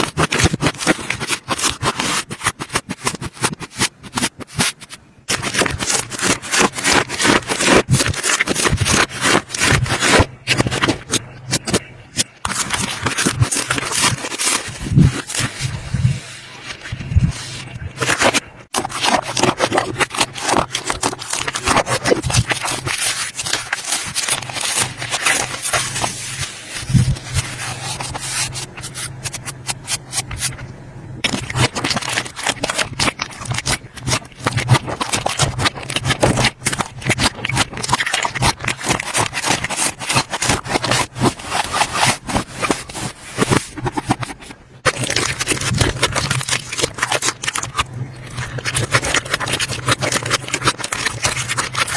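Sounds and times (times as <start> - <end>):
slime crackling and popping: 5.3 - 15.6, 18.0 - 26.2, 31.2 - 44.2, 44.8 - 51.9.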